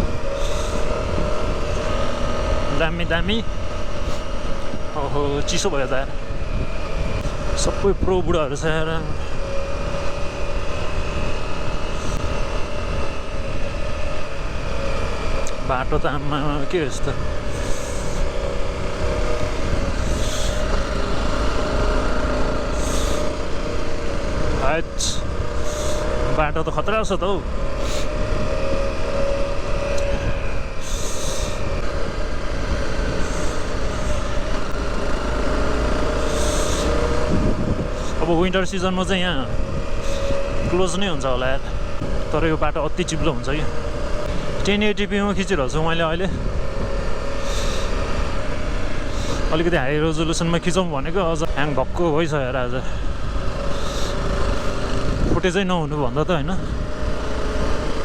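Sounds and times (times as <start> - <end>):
wind on microphone: 0.0 - 2.8, 6.0 - 8.4, 17.0 - 26.4, 27.4 - 35.2, 35.9 - 42.4, 46.1 - 49.6, 52.8 - 55.6
motorcycle engine running: 0.0 - 58.0.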